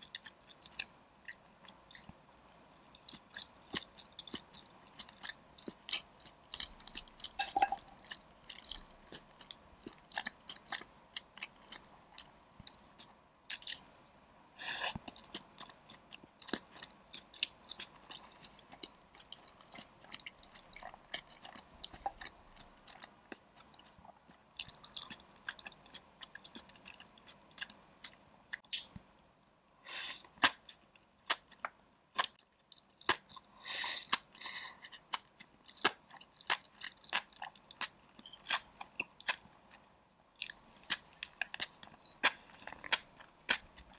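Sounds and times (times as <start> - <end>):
person chewing and biting: 40.4 - 43.9.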